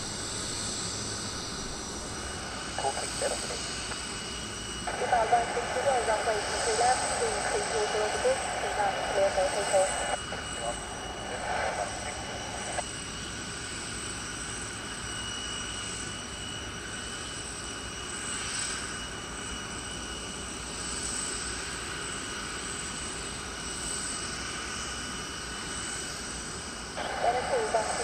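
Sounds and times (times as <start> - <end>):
jet engines rushing and whining: 0.0 - 28.0
radio transmission burst: 2.4 - 4.0, 4.9 - 12.8, 27.0 - 28.0.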